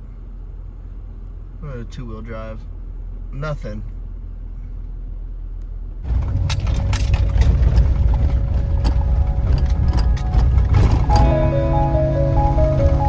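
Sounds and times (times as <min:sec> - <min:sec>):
truck engine and tyre rumble: 0:00.0 - 0:13.0
knocks and rattles: 0:06.0 - 0:11.6
low hum: 0:06.1 - 0:13.0.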